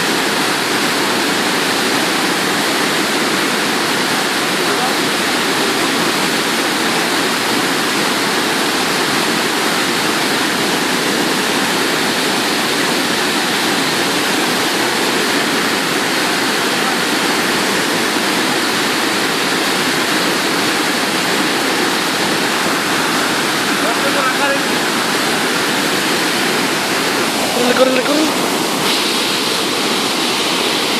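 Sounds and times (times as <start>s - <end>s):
waterfall roaring: 0.0s - 30.9s.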